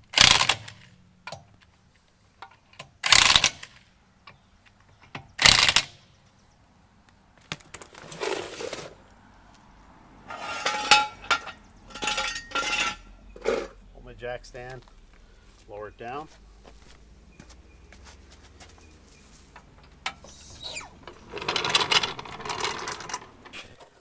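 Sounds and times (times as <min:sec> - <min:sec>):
metal tools and lug nuts clanking: 0:10.2 - 0:24.0.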